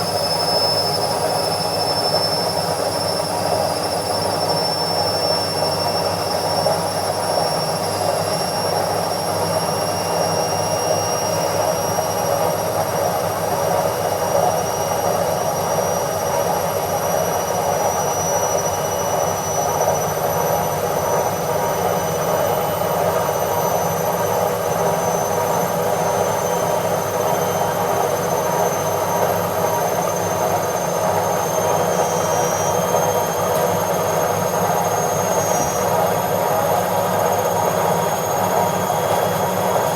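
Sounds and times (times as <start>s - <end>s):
high motor whine: 30.8s - 39.9s.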